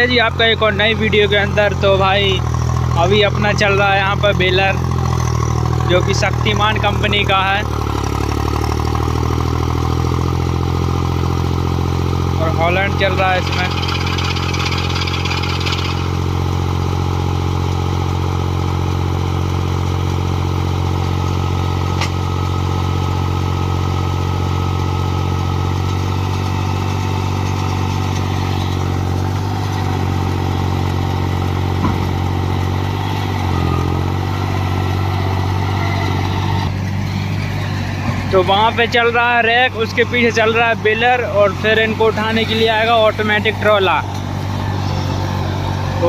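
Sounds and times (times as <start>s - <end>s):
tractor diesel engine running: 0.0s - 46.0s
baler machinery clatter: 12.4s - 16.3s.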